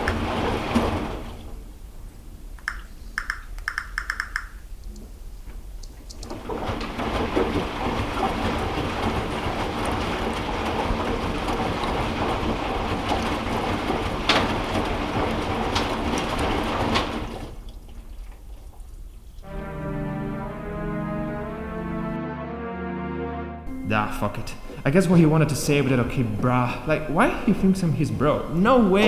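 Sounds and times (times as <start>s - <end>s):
washing machine running: 0.0s - 4.5s, 5.2s - 22.2s, 24.2s - 29.0s
sharp knocks: 2.6s - 4.6s.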